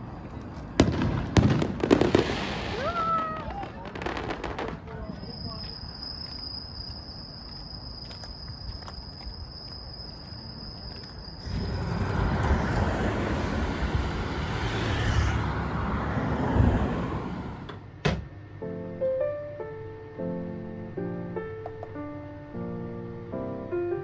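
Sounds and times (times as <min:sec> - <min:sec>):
insect trill: 0:04.1 - 0:17.0
steady rumble and hiss: 0:11.4 - 0:18.7.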